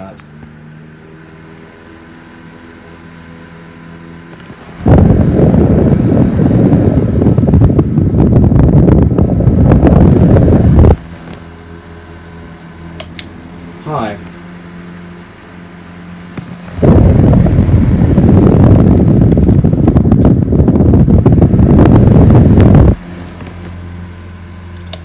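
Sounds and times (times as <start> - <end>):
electric fan motor hum: 0.0 - 25.0
rough rushing rumble: 4.8 - 11.2, 16.6 - 23.2.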